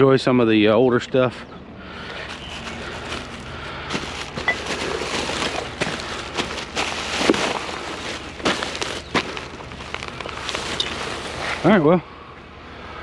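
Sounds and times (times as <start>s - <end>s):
plastic bags rustling: 2.0s - 11.8s.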